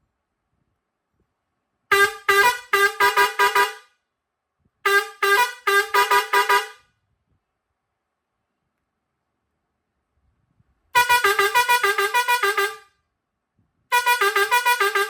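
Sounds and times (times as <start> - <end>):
air horn short blasts: 1.9 - 3.9, 4.9 - 6.9, 11.0 - 13.0, 13.9 - 15.0.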